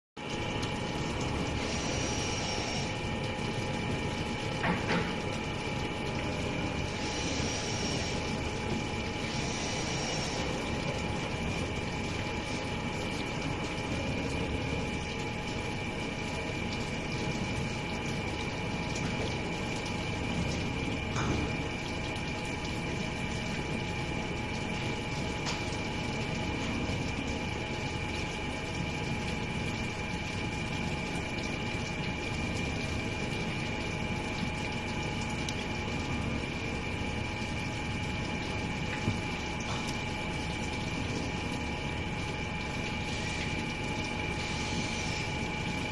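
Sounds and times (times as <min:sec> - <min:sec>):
water running over rollers: 0:00.2 - 0:45.9
water hissing: 0:01.4 - 0:03.0, 0:06.8 - 0:10.9, 0:44.3 - 0:45.5
electric motor with high whine: 0:01.6 - 0:03.0, 0:09.2 - 0:10.7
machine motor and rollers whining: 0:06.5 - 0:11.7.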